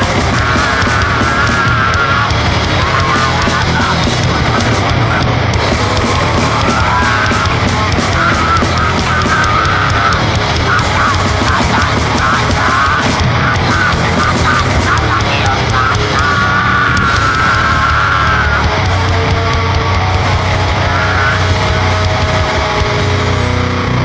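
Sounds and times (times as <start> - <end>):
distorted noise music: 0.0 - 24.0.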